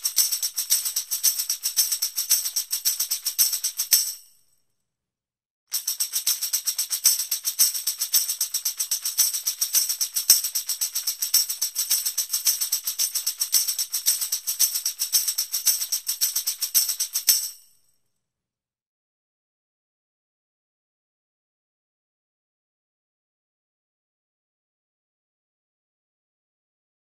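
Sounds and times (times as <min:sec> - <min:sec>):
tambourine shaken: 0:00.0 - 0:04.6, 0:05.7 - 0:18.0.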